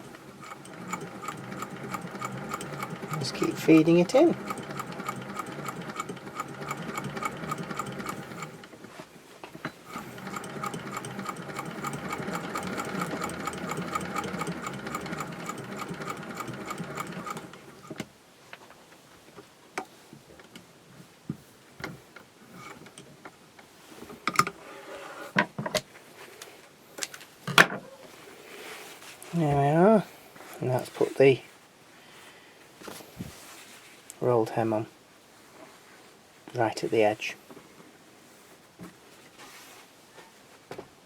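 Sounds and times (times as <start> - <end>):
sewing machine running: 0.0 - 8.8, 9.8 - 18.0.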